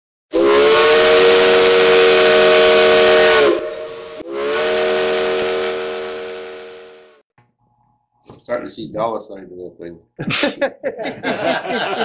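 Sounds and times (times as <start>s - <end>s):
steam locomotive chime whistle: 0.3s - 7.2s
steam hiss: 3.0s - 7.2s.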